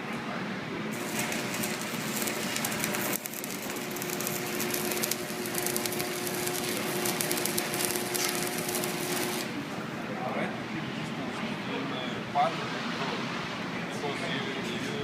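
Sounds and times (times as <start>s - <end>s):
welding arc crackling: 0.9s - 9.7s.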